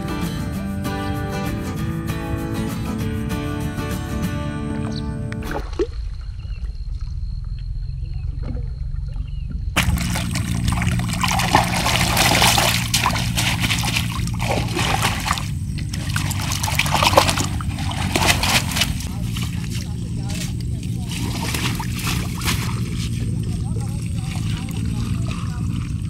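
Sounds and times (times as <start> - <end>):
low motor hum: 1.6 - 26.0
water splashing and pouring: 5.4 - 6.4, 9.8 - 26.0.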